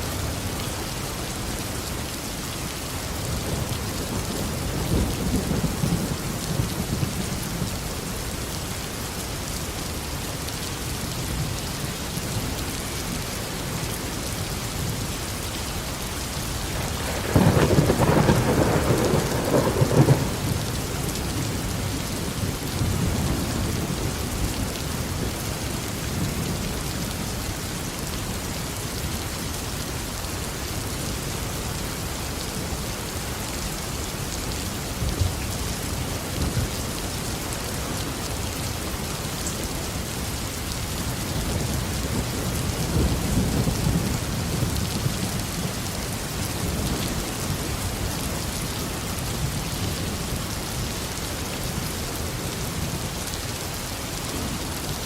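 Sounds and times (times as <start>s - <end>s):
heavy rain falling: 0.0s - 55.0s
loud thunderclap: 16.8s - 20.6s
low thunder rumbling: 16.8s - 25.4s.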